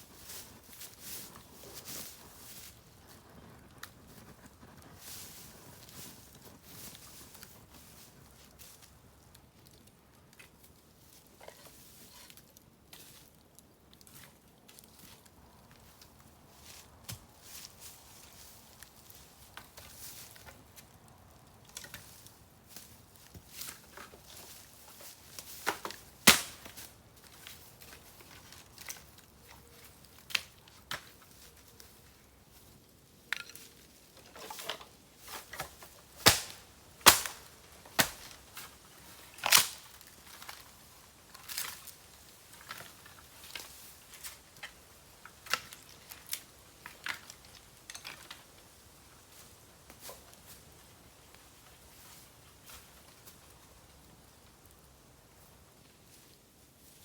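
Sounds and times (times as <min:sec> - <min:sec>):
campfire crackling: 0:01.3 - 0:10.8, 0:13.3 - 0:32.3, 0:35.1 - 0:49.9
bamboo bursting with loud pops: 0:25.3 - 0:27.0, 0:34.4 - 0:40.1.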